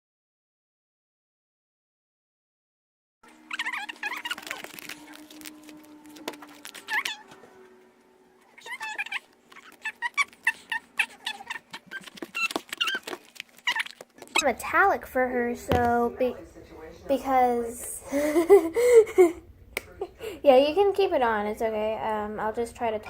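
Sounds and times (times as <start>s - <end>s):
pet whining: 3.3s - 14.4s.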